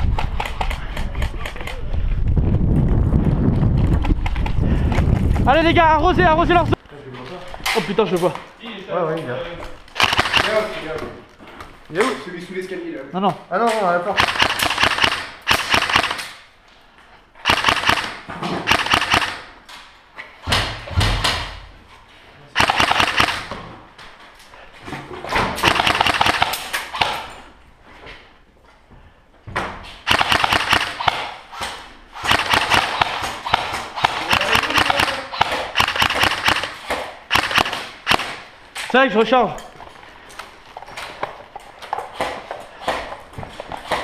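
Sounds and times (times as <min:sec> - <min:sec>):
airsoft rifles firing: 0:10.0 - 0:10.9, 0:14.2 - 0:16.4, 0:17.4 - 0:19.6, 0:22.6 - 0:23.6, 0:25.6 - 0:27.3, 0:30.0 - 0:38.6.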